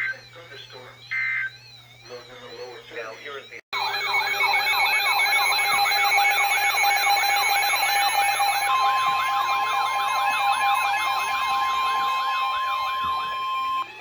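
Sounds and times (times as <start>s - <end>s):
steady alarm tones: 0.0s - 14.0s
warbling siren-like alarm: 0.0s - 14.0s.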